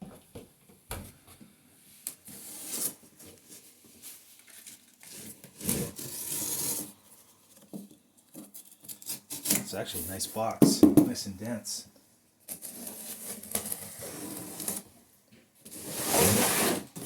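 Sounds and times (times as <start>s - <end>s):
cardboard rubbing and scraping: 12.6s - 14.8s, 15.7s - 17.0s
cardboard ripping: 15.7s - 17.0s.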